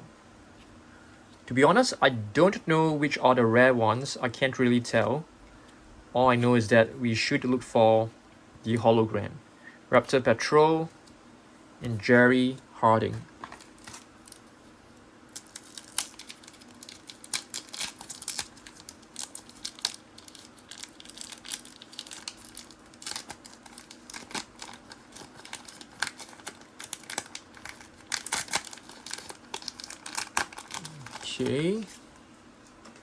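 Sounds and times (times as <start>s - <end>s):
wrapper being torn and crinkled: 13.4s - 14.6s, 15.3s - 31.9s.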